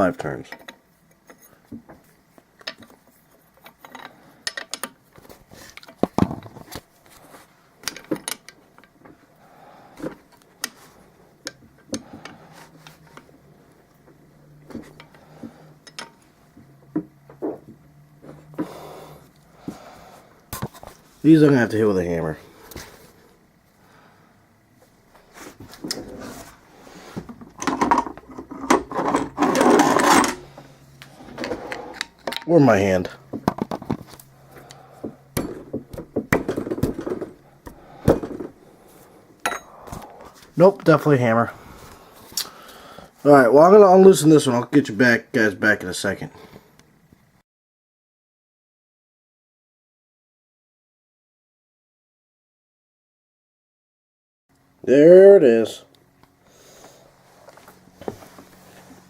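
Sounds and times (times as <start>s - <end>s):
metal parts clattering: 27.6s - 30.4s.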